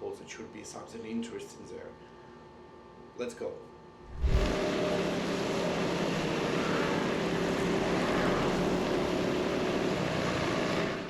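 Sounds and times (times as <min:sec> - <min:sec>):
faint engine drone: 0:04.0 - 0:11.0
wind and road noise: 0:04.1 - 0:04.6.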